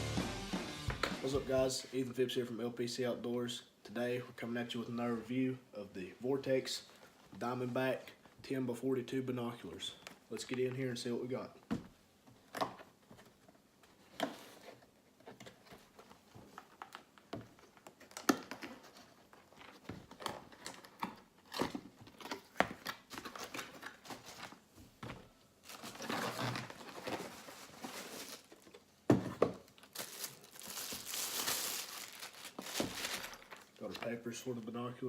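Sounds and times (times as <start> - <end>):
packaging crinkling and rustling: 14.0 - 24.7, 25.6 - 29.0, 29.6 - 34.2.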